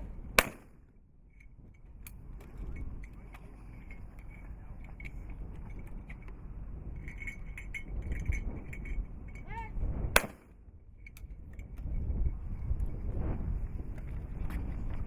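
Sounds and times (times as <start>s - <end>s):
wind rumble: 0.0s - 15.0s
shotgun shot: 0.4s - 0.8s, 10.1s - 10.6s
person shouting a call: 9.4s - 9.8s.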